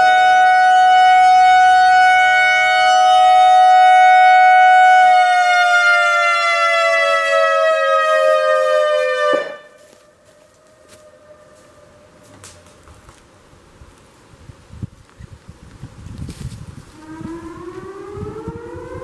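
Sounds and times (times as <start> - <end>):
electronic warning siren: 0.0 - 12.3, 16.9 - 19.0.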